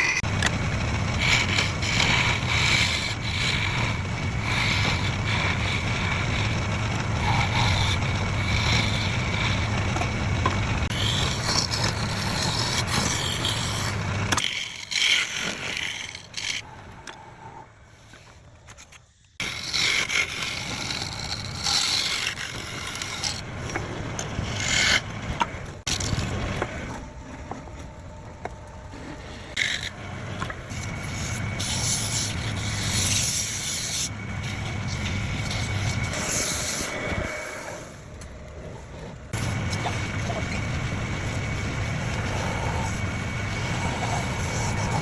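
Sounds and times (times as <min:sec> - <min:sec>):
turning tool scraping wood: 0:00.0 - 0:16.7, 0:18.1 - 0:27.8, 0:28.9 - 0:38.0, 0:38.7 - 0:45.0
wood lathe motor hum: 0:00.0 - 0:16.7, 0:19.4 - 0:45.0.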